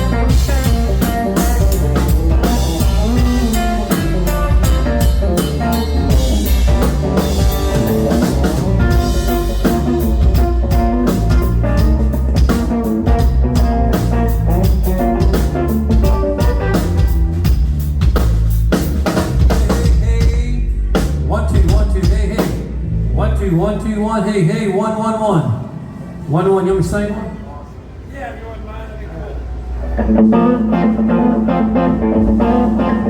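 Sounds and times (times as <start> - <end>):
electric guitar playing: 0.0 - 20.0, 29.6 - 33.0
drum kit beat: 0.0 - 22.9, 30.0 - 33.0.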